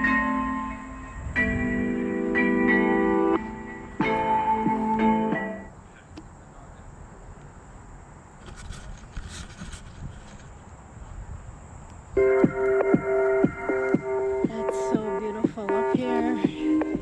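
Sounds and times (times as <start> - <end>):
music: 0.0 - 5.7, 12.2 - 17.0.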